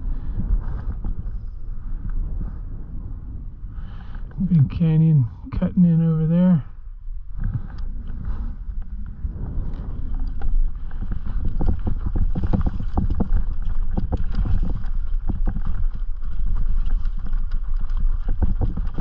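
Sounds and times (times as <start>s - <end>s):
steady low rumble: 0.0s - 19.0s
bike rattling over rocks: 8.6s - 19.0s.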